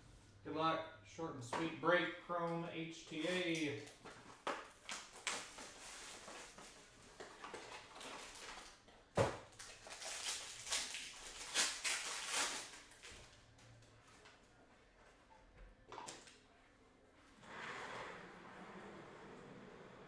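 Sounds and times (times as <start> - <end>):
foil wrappers crinkling: 3.2 - 13.8.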